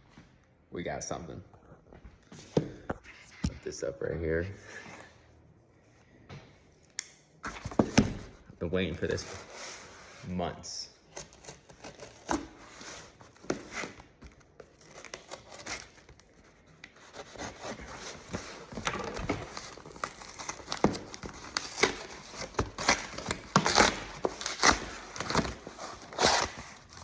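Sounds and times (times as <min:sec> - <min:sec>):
packaging crinkling and rustling: 0:11.4 - 0:27.0.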